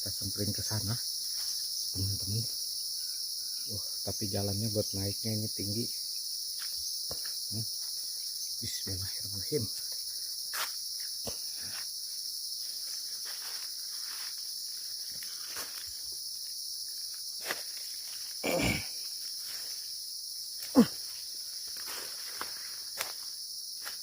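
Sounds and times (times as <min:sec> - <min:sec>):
insects droning: 0:00.0 - 0:24.0
footsteps in undergrowth: 0:09.7 - 0:18.4, 0:19.1 - 0:24.0.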